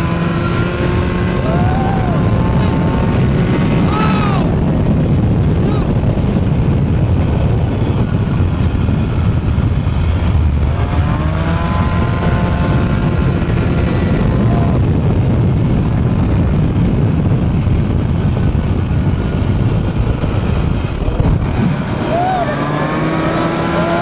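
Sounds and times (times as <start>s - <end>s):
go-kart engine revving: 0.0s - 24.0s.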